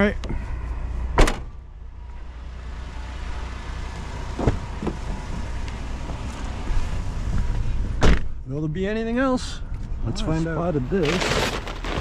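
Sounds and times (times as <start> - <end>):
van door shutting: 1.2 - 1.5.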